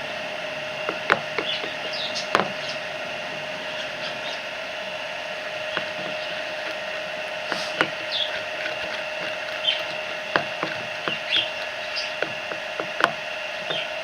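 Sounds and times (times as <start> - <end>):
steady background hum: 0.0 - 14.0
high bird chirps: 1.4 - 2.8, 11.0 - 12.3
slime squelching: 5.3 - 14.0.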